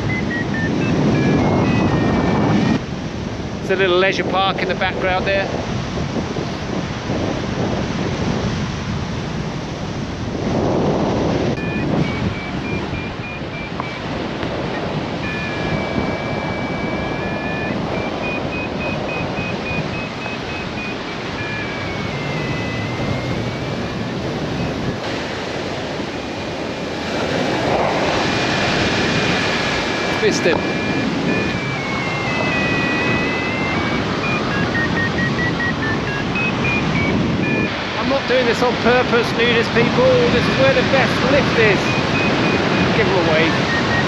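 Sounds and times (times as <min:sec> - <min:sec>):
variometer beeping high tones: 0:00.0 - 0:02.8, 0:11.5 - 0:25.2, 0:27.3 - 0:44.0
wind rushing over microphone: 0:00.0 - 0:44.0.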